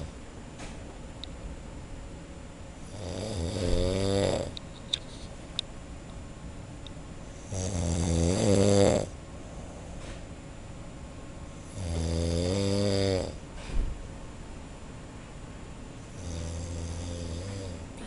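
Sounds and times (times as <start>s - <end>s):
man snoring: 2.9s - 4.6s, 7.4s - 9.2s, 11.6s - 13.4s, 16.1s - 17.9s.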